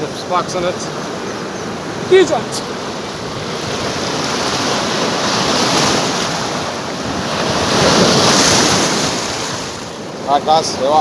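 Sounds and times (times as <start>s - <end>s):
surf washing against rocks: 0.0s - 11.0s
wind buffeting microphone: 0.0s - 11.0s.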